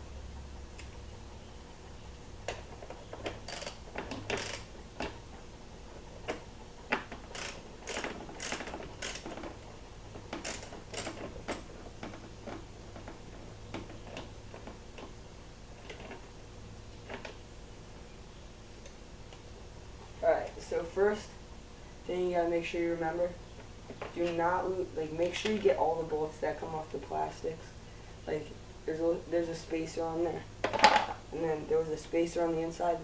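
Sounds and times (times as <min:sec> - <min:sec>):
socket ratchet clicking: 0:03.5 - 0:04.7, 0:07.3 - 0:09.4, 0:10.3 - 0:11.2.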